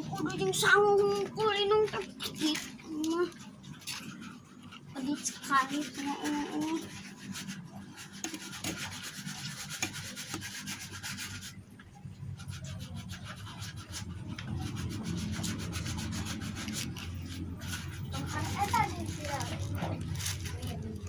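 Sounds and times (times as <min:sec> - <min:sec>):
rapid rubbing strokes: 0:00.0 - 0:21.0.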